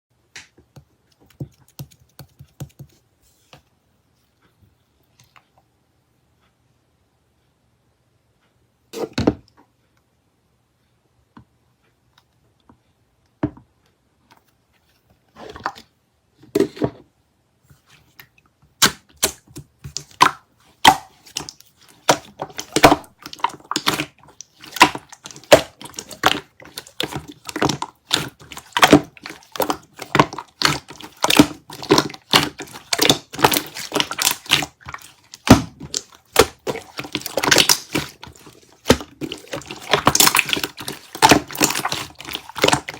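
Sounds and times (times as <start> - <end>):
slime squished by hand: 18.8 - 42.9.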